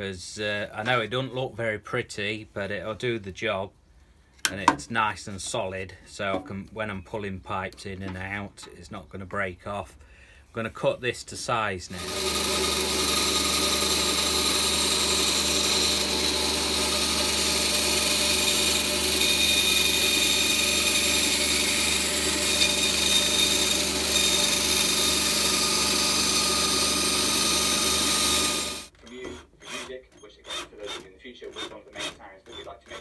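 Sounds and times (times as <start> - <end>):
power tool cutting plastic: 12.0 - 33.0.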